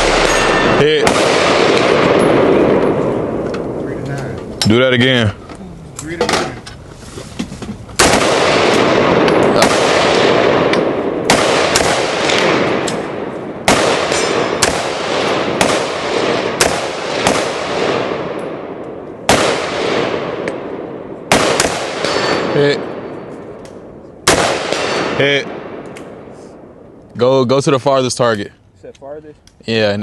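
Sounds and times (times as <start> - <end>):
gunshots with echoing tails: 0.0 - 4.0, 8.0 - 27.0.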